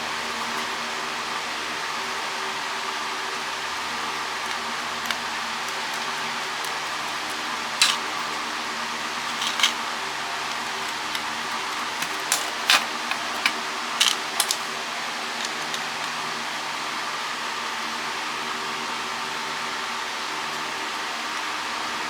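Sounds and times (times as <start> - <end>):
fan hiss and hum: 0.0 - 22.0
hand tools clinking on metal: 4.4 - 16.4.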